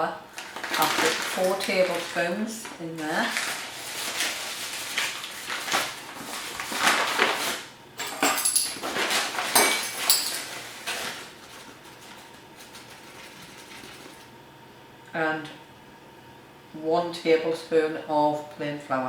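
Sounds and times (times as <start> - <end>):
rustling: 3.2 - 7.6, 10.4 - 14.4.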